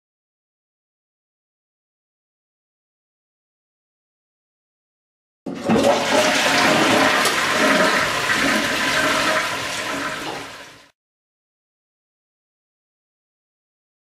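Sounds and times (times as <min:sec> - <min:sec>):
toilet flushing: 0:05.5 - 0:10.9.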